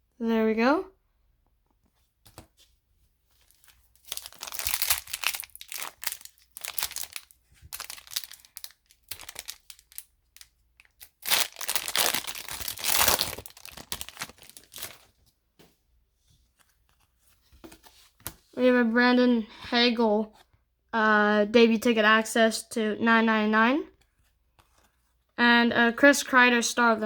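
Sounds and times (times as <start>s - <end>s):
plastic wrapper tearing and crinkling: 3.4s - 15.1s.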